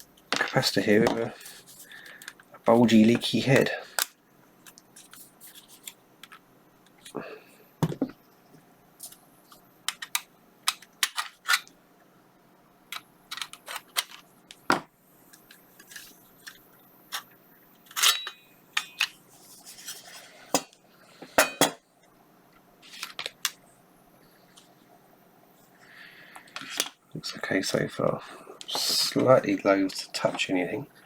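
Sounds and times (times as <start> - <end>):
tools clinking on metal casing: 17.9 - 19.1.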